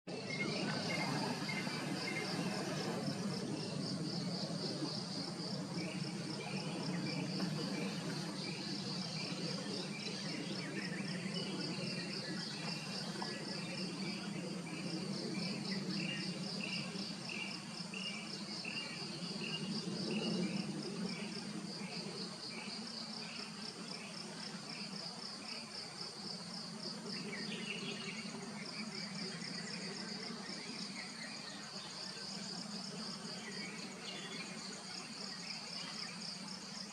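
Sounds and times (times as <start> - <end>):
insects buzzing: 0.1 - 36.9.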